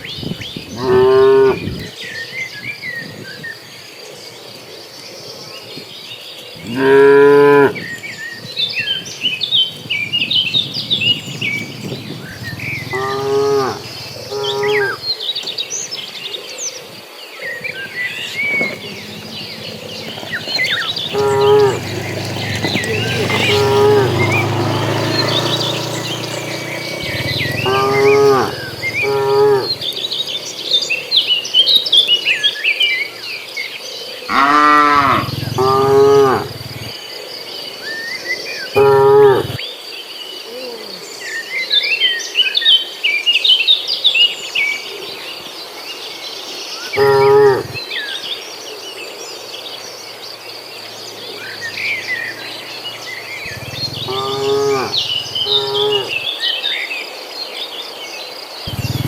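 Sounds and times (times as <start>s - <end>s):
insects droning and chirping: 0.0s - 59.0s
cattle mooing: 12.6s - 15.0s, 17.8s - 31.0s, 34.3s - 36.6s, 47.0s - 47.8s, 51.4s - 56.3s.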